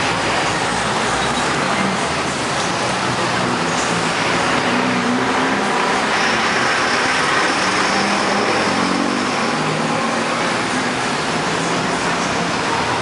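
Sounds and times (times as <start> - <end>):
cars driving past: 0.0 - 13.0.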